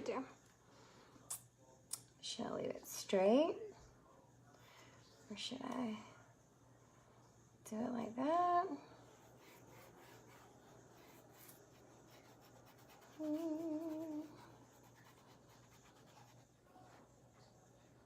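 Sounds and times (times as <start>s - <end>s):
faint scratching and rubbing: 8.8s - 18.0s
woman humming: 13.0s - 14.6s.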